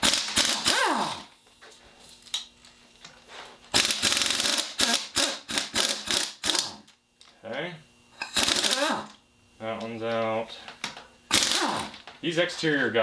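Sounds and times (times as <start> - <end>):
ratchet wrench clicking: 3.8 - 6.8, 8.2 - 9.1.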